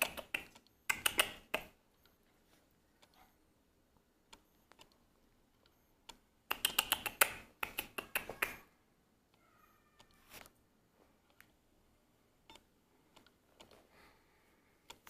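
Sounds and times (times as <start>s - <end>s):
puppy claws clicking on hard floor: 6.5s - 8.6s.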